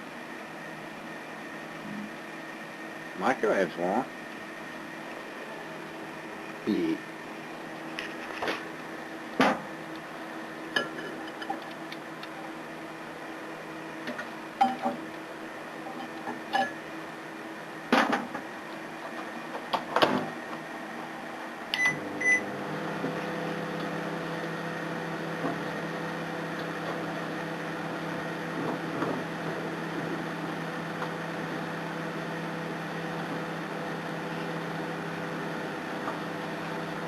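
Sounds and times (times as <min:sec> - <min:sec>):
microwave oven humming: 0:00.0 - 0:37.0
keypad beeps: 0:21.8 - 0:22.4.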